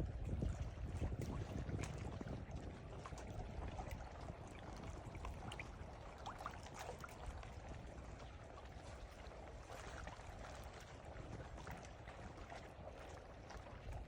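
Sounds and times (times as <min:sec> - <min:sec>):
water sloshing and trickling: 0:00.0 - 0:14.0
small splashes: 0:03.0 - 0:14.0.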